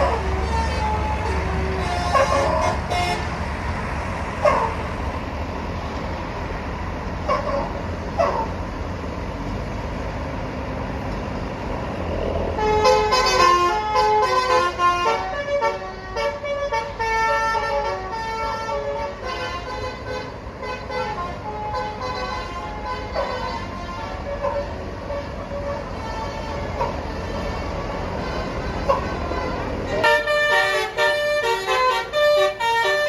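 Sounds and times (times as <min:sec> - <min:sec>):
bus musical horn playing a tune: 0:00.0 - 0:03.5, 0:12.5 - 0:33.0
low vehicle rumble: 0:00.0 - 0:33.0.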